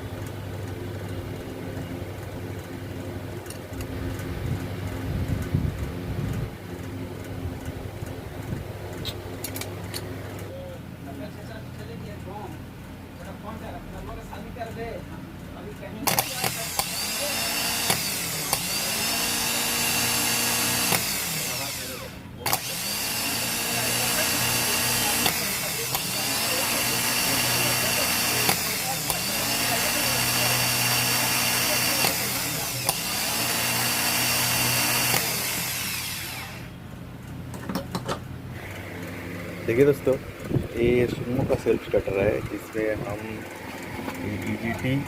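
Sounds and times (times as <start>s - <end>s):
starter motor whining: 15.8s - 45.0s
sharp clicks: 16.0s - 17.0s.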